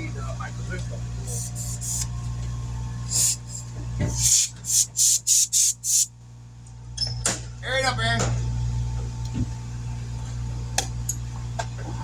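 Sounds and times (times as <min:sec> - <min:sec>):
low machine hum: 0:00.0 - 0:12.0
short hissing air bursts: 0:01.3 - 0:02.1, 0:03.1 - 0:06.1.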